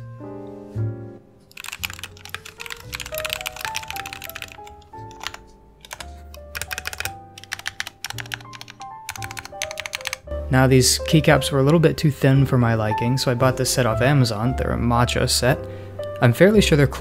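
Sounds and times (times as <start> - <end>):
background music: 0.0 - 17.0
mechanical keyboard typing: 1.5 - 10.3.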